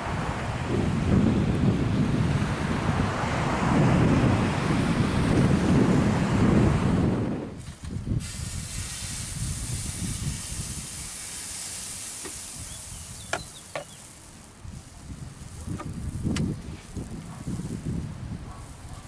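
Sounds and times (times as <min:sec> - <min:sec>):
wind buffeting microphone: 0:00.0 - 0:19.0
pancake sizzling in a pan: 0:08.2 - 0:18.4.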